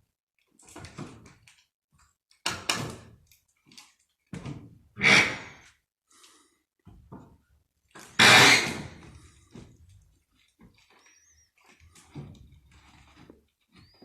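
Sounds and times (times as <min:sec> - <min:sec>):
wooden beams knocking and clattering: 0:06.8 - 0:07.5.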